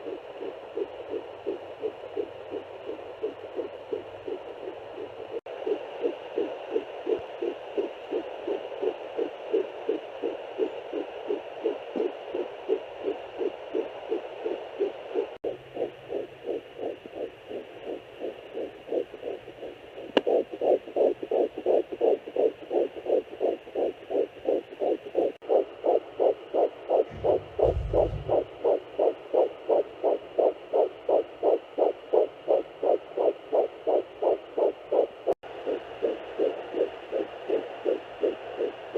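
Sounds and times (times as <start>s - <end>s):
fetal heartbeat on doppler: 0.0s - 38.9s
low thump: 27.1s - 28.8s.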